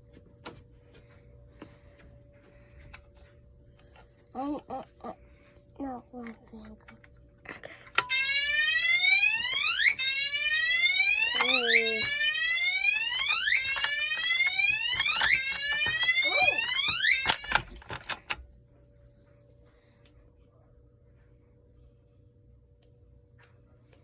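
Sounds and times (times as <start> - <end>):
fire alarm horn whooping: 8.0 - 17.7
clicks: 13.1 - 18.4.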